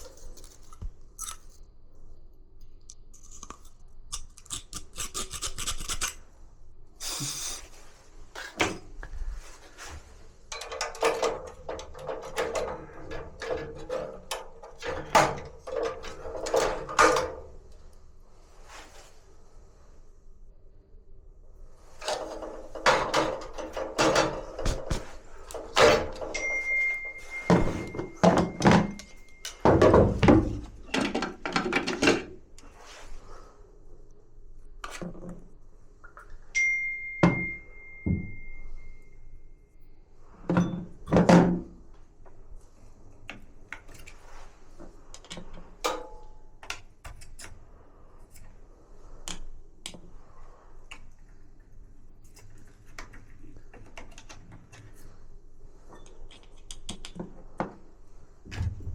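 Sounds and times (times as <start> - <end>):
metal tools clattering: 10.5 - 17.5, 22.0 - 32.3.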